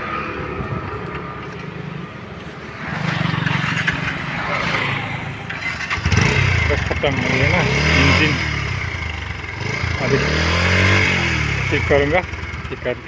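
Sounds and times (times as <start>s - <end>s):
motorcycle engine running: 5.3s - 13.0s.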